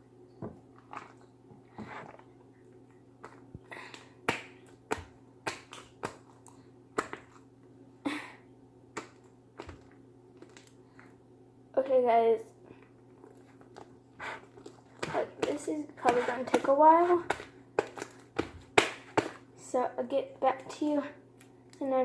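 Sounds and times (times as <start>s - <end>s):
sticky slime snapping and popping: 3.9s - 6.3s.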